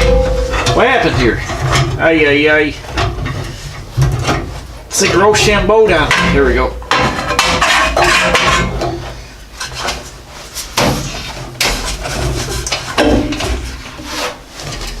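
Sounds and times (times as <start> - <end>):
sharp ringing knocks: 0.0 - 1.2
low steady hum: 0.0 - 9.0
sheet metal clanking: 0.0 - 9.1.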